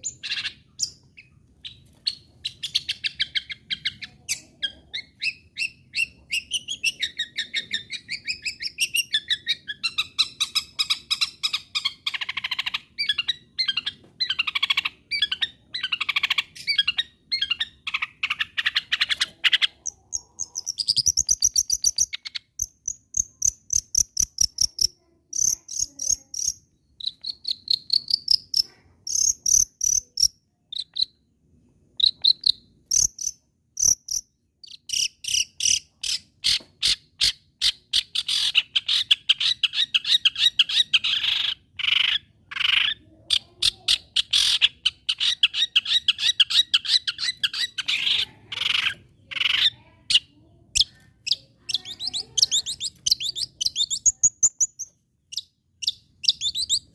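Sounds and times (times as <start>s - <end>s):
bird singing chirps and warbles: 0.0s - 31.2s, 44.2s - 56.9s.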